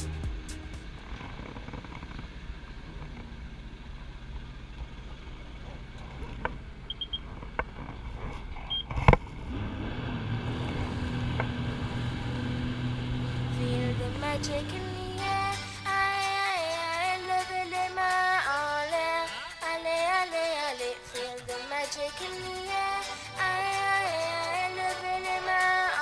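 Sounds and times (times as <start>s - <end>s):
jet ski engine: 9.5s - 15.8s.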